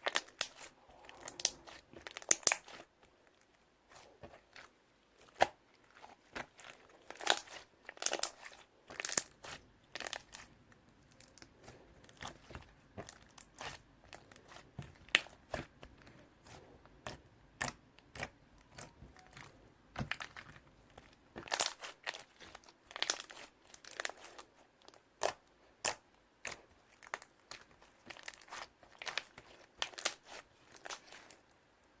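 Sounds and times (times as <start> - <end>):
slime popping and crackling: 0.0 - 2.9, 6.4 - 10.5, 21.4 - 24.4, 25.2 - 31.3.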